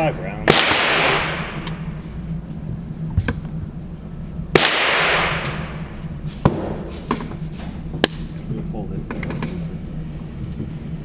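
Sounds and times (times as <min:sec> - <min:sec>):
pistol shots: 0:00.0 - 0:01.9, 0:04.5 - 0:06.9.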